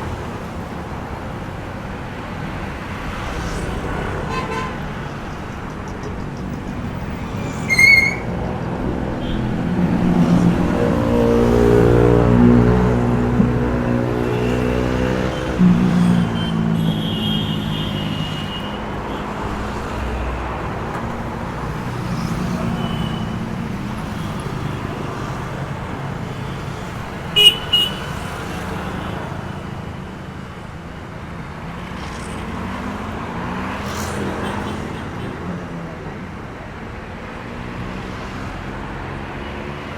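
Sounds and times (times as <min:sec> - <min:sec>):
passing traffic rumble: 0:00.0 - 0:39.9
vehicle horn toots: 0:07.5 - 0:08.4, 0:27.4 - 0:28.1.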